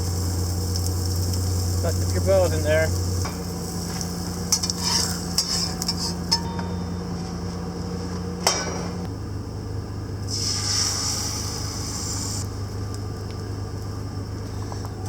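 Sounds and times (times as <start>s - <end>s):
faint sizzle: 0.0s - 6.5s, 10.2s - 14.0s
utensil scraping frying pan: 2.9s - 6.5s.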